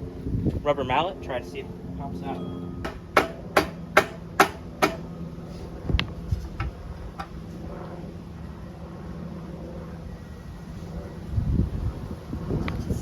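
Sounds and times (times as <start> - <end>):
rubber mallet tapping exhaust pipe: 2.8 - 5.1.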